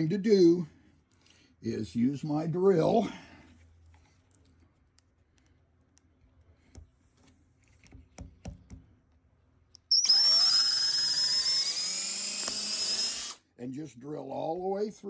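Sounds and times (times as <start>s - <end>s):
electric drill whining: 9.9s - 13.4s.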